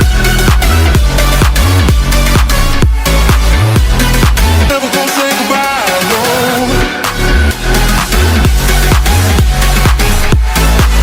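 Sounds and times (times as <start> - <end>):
deep bass drum beat: 0.0 - 4.7, 7.4 - 11.0.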